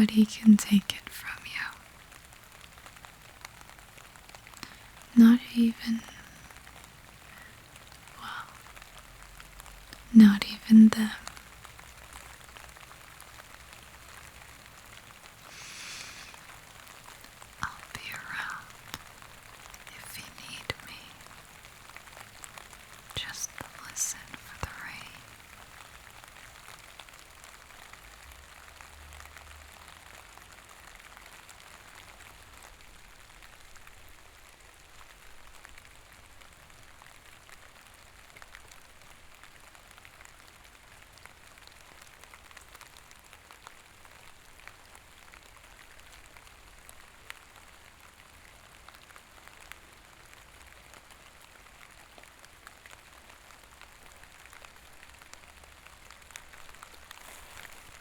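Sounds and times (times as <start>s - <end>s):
faint low rumble: 0.0s - 25.4s
steady rain hiss: 0.0s - 58.0s.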